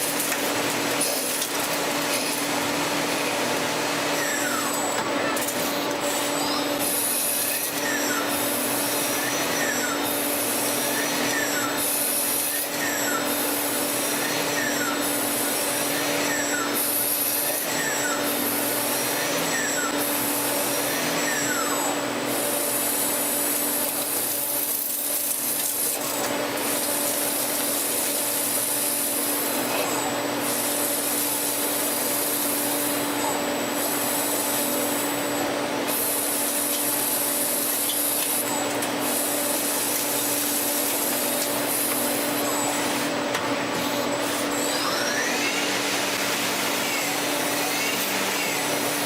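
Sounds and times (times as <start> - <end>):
lathe motor hum: 0.0 - 49.0
metal cutting with falling whine: 0.0 - 49.0.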